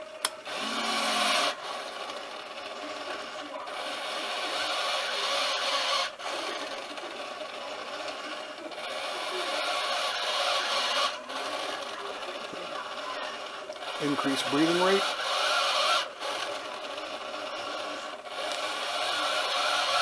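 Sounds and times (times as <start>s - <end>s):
servo winch gritty mechanical noise: 0.0s - 20.0s.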